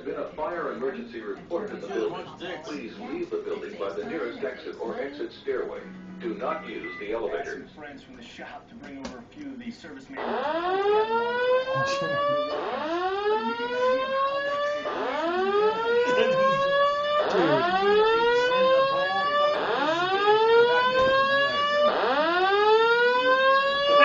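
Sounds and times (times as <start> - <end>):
fire alarm whoop tone: 10.2 - 24.0.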